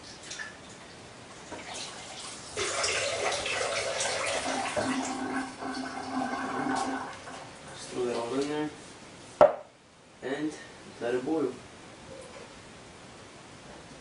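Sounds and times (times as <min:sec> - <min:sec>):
water pouring into pot: 0:02.1 - 0:07.3.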